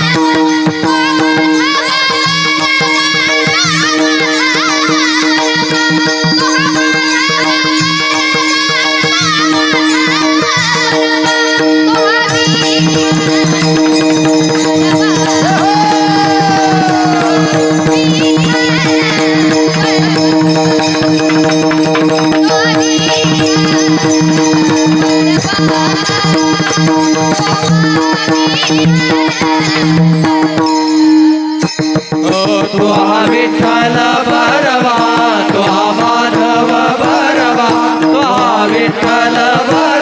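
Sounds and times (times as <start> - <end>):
fast hand drumming: 0.0 - 30.9, 31.8 - 40.0
held drone: 12.8 - 26.7.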